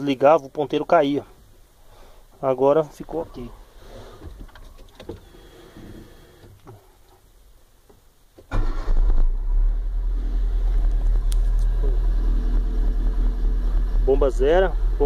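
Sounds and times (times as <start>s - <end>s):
car engine starting and idling: 8.5s - 15.0s.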